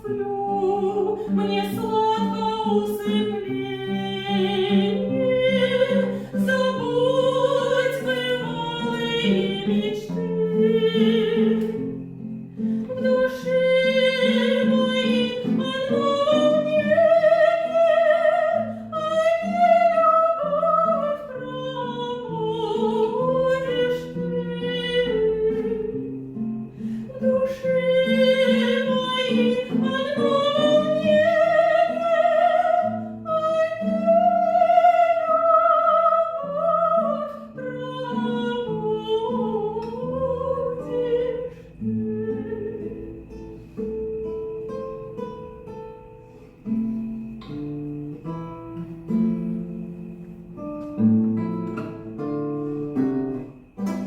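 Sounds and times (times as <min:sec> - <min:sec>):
woman singing operatically: 0:00.0 - 0:12.0, 0:12.9 - 0:26.1, 0:27.1 - 0:43.2.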